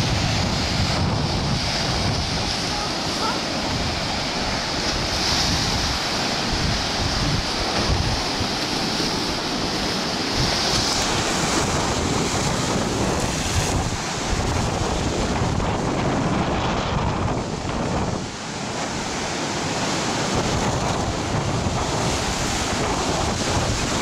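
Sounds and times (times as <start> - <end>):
rough surf breaking on beach: 0.0 - 24.0
wind buffeting microphone: 0.0 - 24.0.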